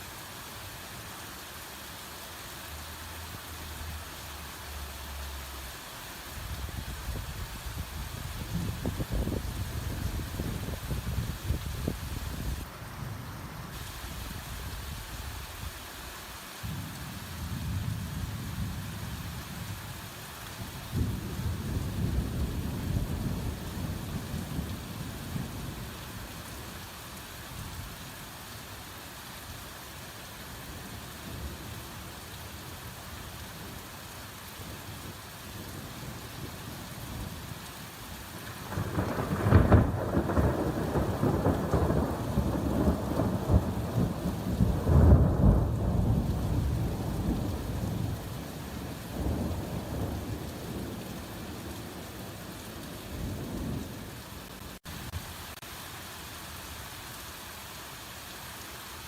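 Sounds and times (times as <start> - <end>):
hard rain falling: 0.0 - 59.0
thunder rumbling: 38.4 - 52.4.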